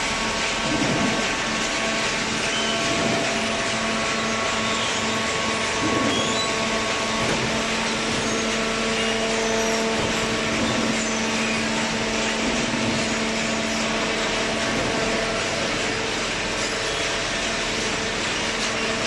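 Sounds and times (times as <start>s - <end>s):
hydraulic power unit humming: 0.0s - 19.0s.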